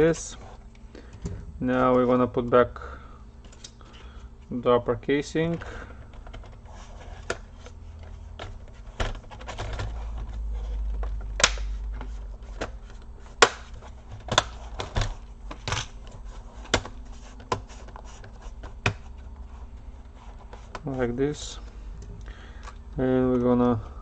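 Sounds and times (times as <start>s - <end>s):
low handling rumble: 1.1s - 2.8s.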